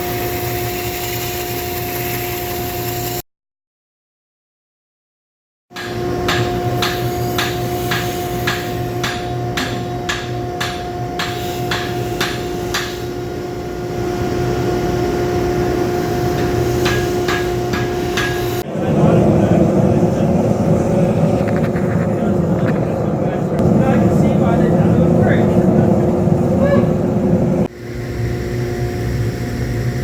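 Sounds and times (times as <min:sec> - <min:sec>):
hammer blows on hot metal: 0:05.8 - 0:13.2, 0:16.2 - 0:18.7
steady hum with faint drone: 0:06.0 - 0:30.0.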